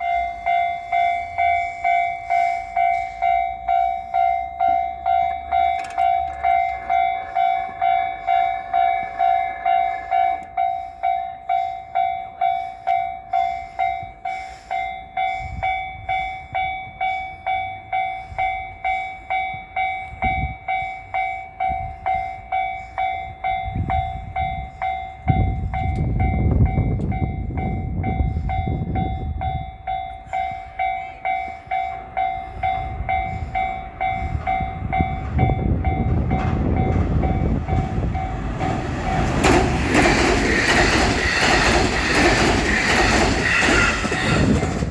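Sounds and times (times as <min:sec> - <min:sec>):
higher alarm tone: 0:00.0 - 0:13.7
level crossing bell clanging: 0:00.0 - 0:14.2
train rumble: 0:00.0 - 0:44.9
train wheel clacks: 0:05.3 - 0:12.5, 0:29.9 - 0:44.9.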